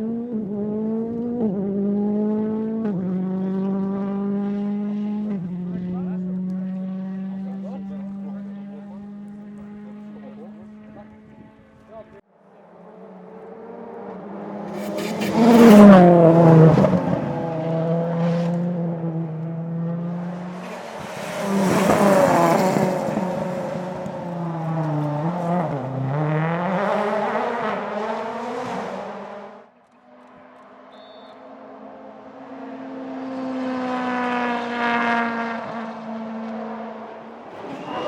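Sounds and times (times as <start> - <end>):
rally car engine revving: 0.0 - 12.2, 12.8 - 29.7, 30.5 - 38.0.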